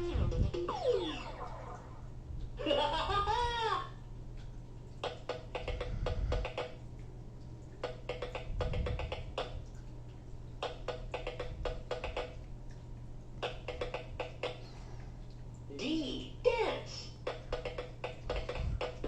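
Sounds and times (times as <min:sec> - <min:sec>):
warbling electronic chirp: 0:00.0 - 0:02.1
steady low hum: 0:00.0 - 0:19.0
rhythmic wood-block clicks: 0:05.0 - 0:06.8, 0:07.8 - 0:09.8, 0:10.6 - 0:12.8, 0:13.4 - 0:14.7, 0:17.2 - 0:19.0.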